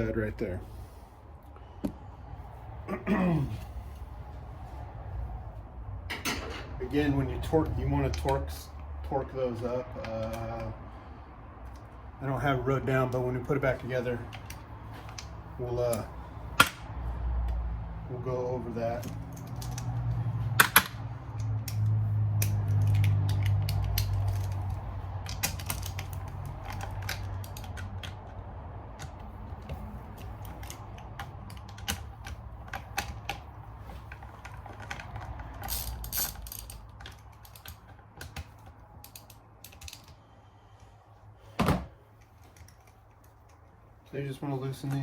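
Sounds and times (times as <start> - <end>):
ratchet wrench clicking: 35.2 - 37.8.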